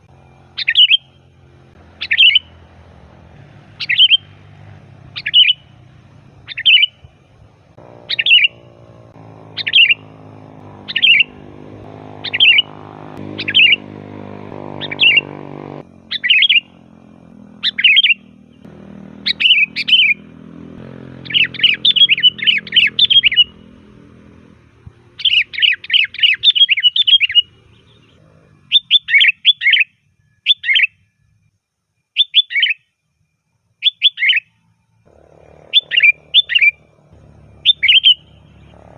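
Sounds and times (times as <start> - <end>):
bulbul chirping: 0.1 - 3.0, 3.7 - 7.2, 7.8 - 15.4, 16.0 - 31.0, 33.8 - 34.5, 35.1 - 38.9.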